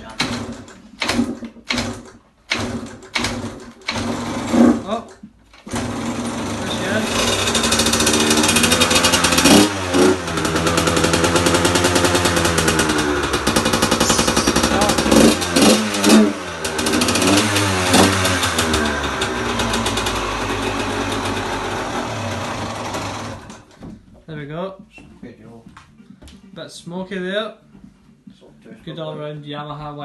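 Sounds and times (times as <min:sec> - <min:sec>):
two-stroke engine revving: 0:00.0 - 0:23.7.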